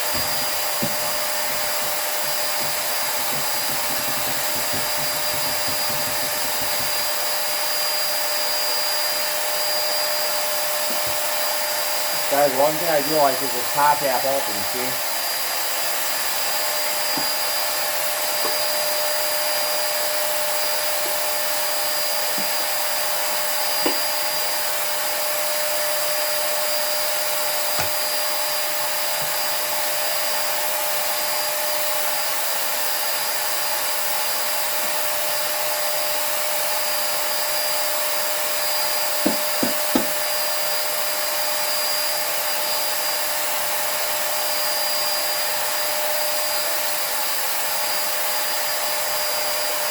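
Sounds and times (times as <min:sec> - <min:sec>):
vacuum cleaner running: 0:00.0 - 0:14.4
light knocks: 0:39.2 - 0:40.2.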